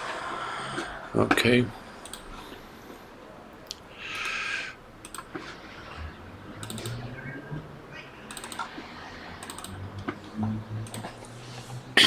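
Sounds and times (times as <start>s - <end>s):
computer keyboard typing: 2.0s - 2.4s, 4.1s - 4.4s, 5.0s - 5.6s, 6.6s - 7.0s, 8.3s - 8.8s, 9.4s - 10.2s, 10.8s - 11.4s.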